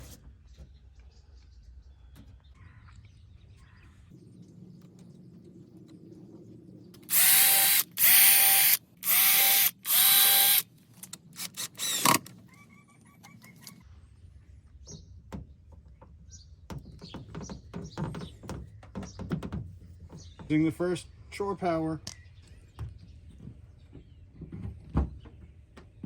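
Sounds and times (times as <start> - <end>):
power drill whining: 7.1 - 10.6, 11.4 - 12.2.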